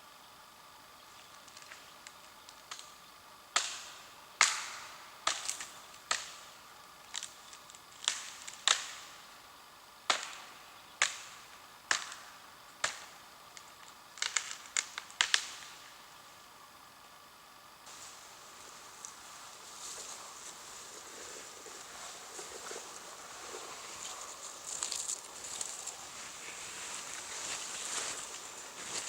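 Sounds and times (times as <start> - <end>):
dry wood cracking and snapping: 7.1 - 8.8, 14.2 - 15.6, 21.8 - 29.0.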